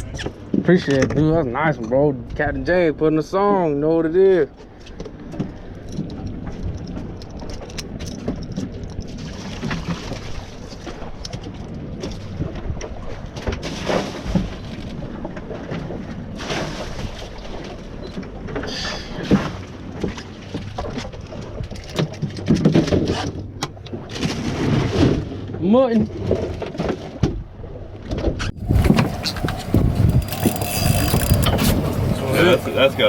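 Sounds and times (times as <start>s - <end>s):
wind: 0.0s - 33.0s
knocks and splashes: 8.0s - 25.6s
water noise: 28.5s - 33.0s.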